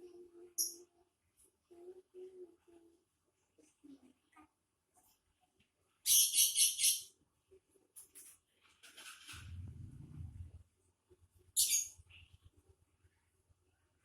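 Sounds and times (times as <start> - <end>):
lovebird chirping: 6.1 - 7.1, 11.6 - 12.3
low rumble: 9.4 - 10.8.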